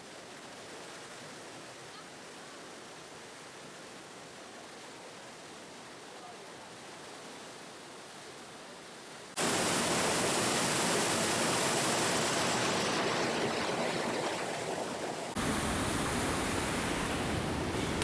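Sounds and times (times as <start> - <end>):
faint hiss: 0.0 - 14.0, 15.1 - 18.0
waterfall rushing: 9.3 - 13.8, 14.4 - 18.0.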